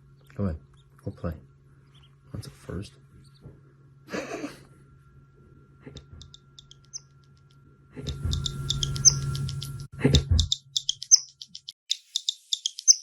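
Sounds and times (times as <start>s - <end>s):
bird chirping: 0.0s - 1.1s, 1.8s - 2.3s, 3.2s - 3.5s, 6.0s - 7.4s, 8.0s - 13.0s.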